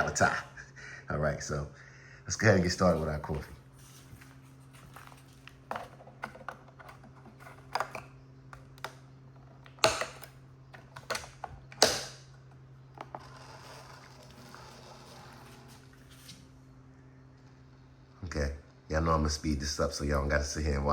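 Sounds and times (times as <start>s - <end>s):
steady low hum: 0.0s - 20.9s
plastic clicks and knocks: 9.6s - 12.1s.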